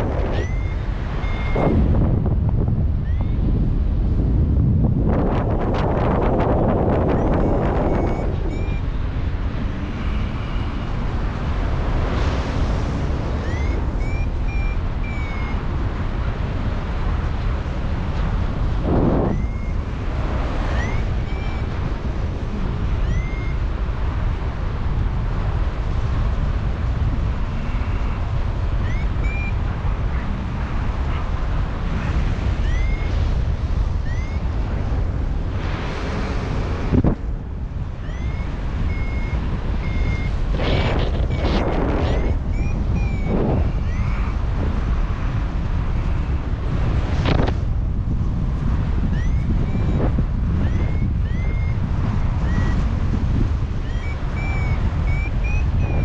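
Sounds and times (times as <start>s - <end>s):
variometer short rising beeps: 0.0s - 2.2s, 3.0s - 3.5s, 7.0s - 9.0s, 13.4s - 15.7s, 18.8s - 22.0s, 22.9s - 23.7s, 28.8s - 29.8s, 32.5s - 33.3s, 33.9s - 34.6s, 37.9s - 44.4s, 49.0s - 56.0s
wind buffeting microphone: 0.0s - 56.0s.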